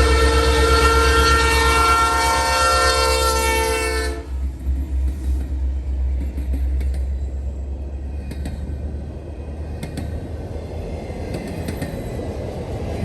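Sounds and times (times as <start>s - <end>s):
locomotive air horn: 0.0s - 4.4s
train rumbling past: 0.0s - 13.0s.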